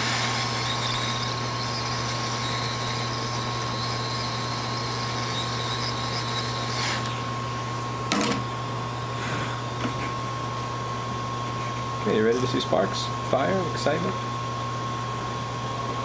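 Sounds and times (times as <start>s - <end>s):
hot air station blowing: 0.0s - 10.4s.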